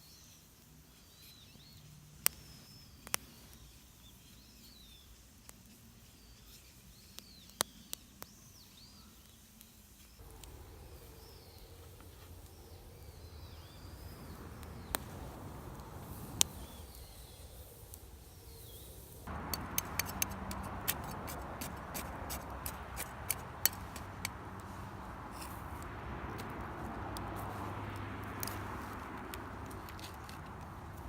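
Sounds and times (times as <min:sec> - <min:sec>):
campfire crackling and popping: 0:02.2 - 0:03.6, 0:09.6 - 0:31.0
sharp snaps: 0:09.6 - 0:31.0
faint bird calls: 0:10.2 - 0:25.8.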